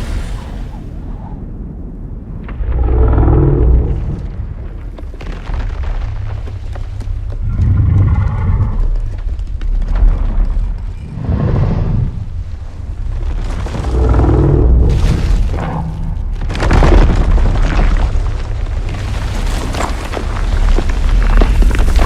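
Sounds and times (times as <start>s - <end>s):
heavy low rumble: 0.0s - 22.0s
monster roar: 7.4s - 9.0s.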